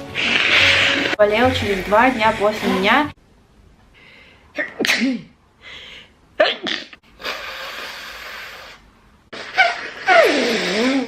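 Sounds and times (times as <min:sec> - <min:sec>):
nose blowing: 0:00.0 - 0:01.2, 0:06.6 - 0:11.0
in-breath: 0:03.9 - 0:04.5, 0:05.6 - 0:06.2
person sneezing: 0:04.6 - 0:05.4, 0:06.4 - 0:08.8.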